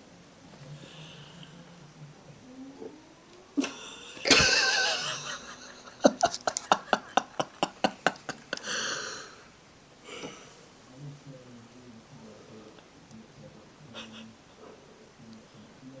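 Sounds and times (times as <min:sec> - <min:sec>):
person laughing: 0:03.6 - 0:09.2, 0:13.9 - 0:14.3.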